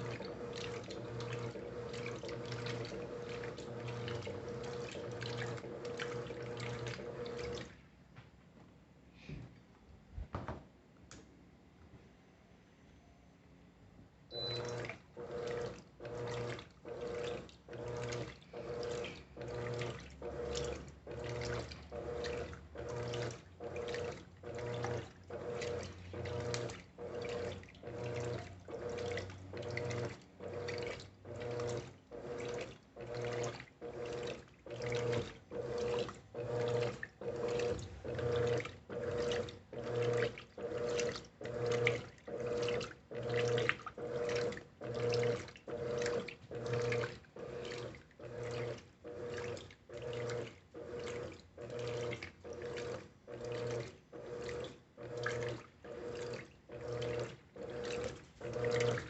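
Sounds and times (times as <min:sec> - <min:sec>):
washing machine motor humming: 0:00.0 - 0:07.8, 0:14.3 - 0:59.0
water sloshing: 0:00.0 - 0:07.9, 0:14.6 - 0:59.0.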